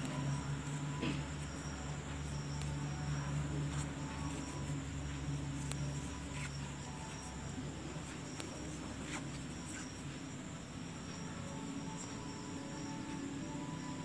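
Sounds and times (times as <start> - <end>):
high-pitched background whine: 0.0 - 14.0
low hum: 0.0 - 14.0.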